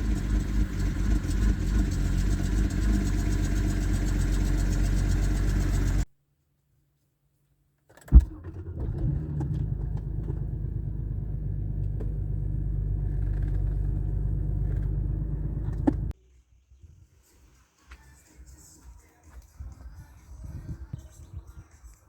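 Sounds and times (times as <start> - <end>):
car engine idling: 0.0 - 6.1, 8.2 - 16.1
engine thump: 8.0 - 16.2.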